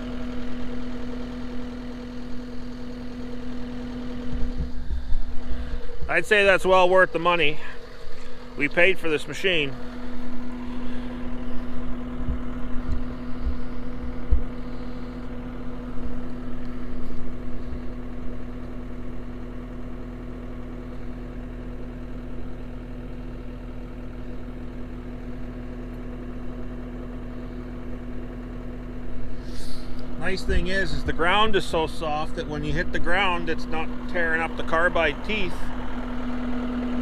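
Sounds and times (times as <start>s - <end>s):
skid steer mulcher humming: 0.0s - 37.0s.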